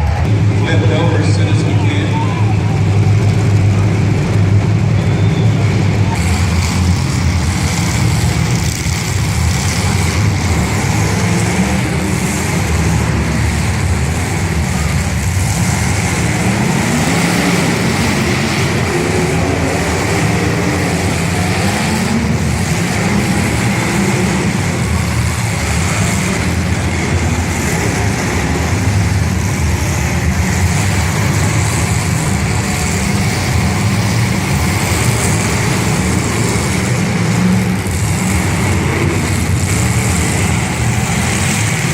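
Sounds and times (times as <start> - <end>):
car engines running loudly: 0.0 - 41.9.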